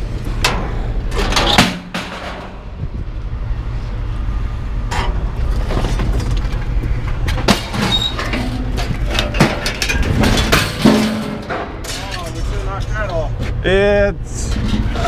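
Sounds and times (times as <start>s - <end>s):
vehicle engine rumbling: 0.0s - 15.0s
loose metal knocking and rattling: 7.3s - 12.8s.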